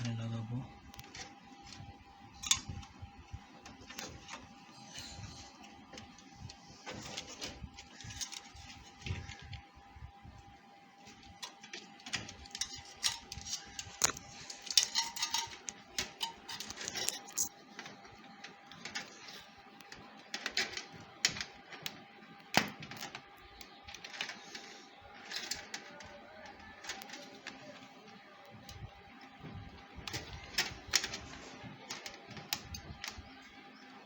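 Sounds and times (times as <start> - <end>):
plastic cables clicking: 0.9 - 4.7, 11.0 - 34.0.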